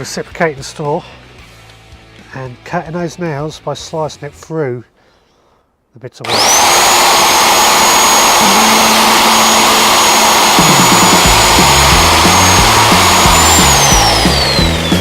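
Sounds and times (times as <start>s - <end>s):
reciprocating saw whining: 6.3s - 15.0s.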